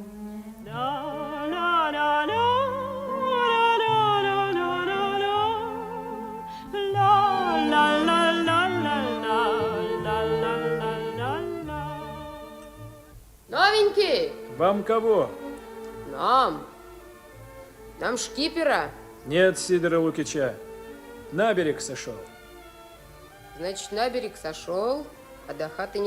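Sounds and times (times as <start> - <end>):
woman singing wordless melody: 0.0 - 14.6, 15.4 - 16.9
orchestral accompaniment: 0.0 - 26.0.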